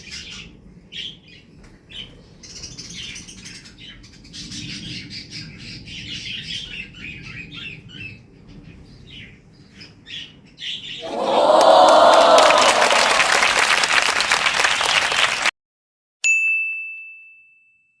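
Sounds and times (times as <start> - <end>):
bell-like ding: 16.2 - 18.0.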